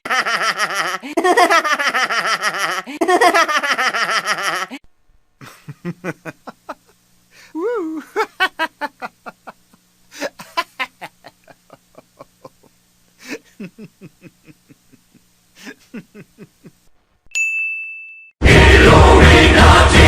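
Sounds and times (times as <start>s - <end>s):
laughing bursts: 0.0s - 4.8s, 5.4s - 16.9s
high ding tone: 17.3s - 18.4s
loud music: 18.4s - 20.0s.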